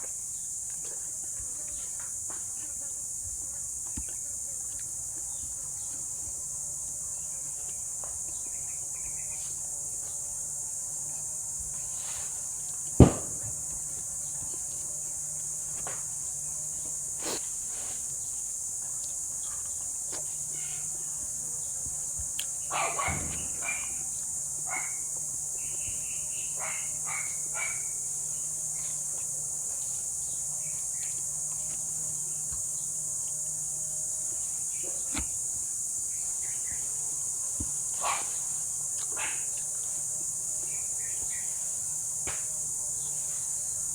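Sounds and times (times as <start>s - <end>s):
high-pitched insect chorus: 0.0s - 43.9s
sharp knock: 13.0s - 13.6s.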